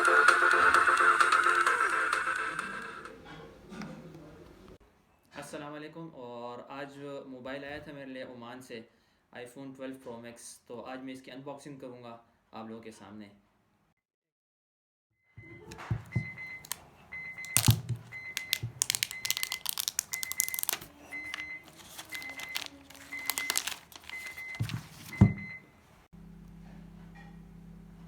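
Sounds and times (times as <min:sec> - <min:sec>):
plastic packaging crinkling and tearing: 0:16.6 - 0:16.8, 0:17.4 - 0:25.2.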